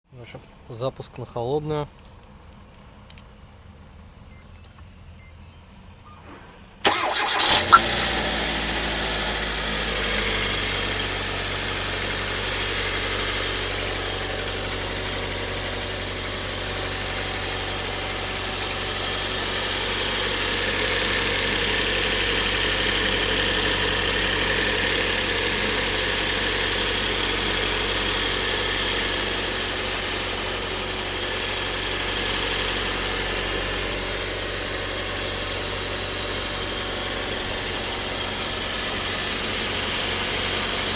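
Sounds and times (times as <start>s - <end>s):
engine starter cranking: 6.8s - 9.0s
car engine idling: 6.8s - 40.9s.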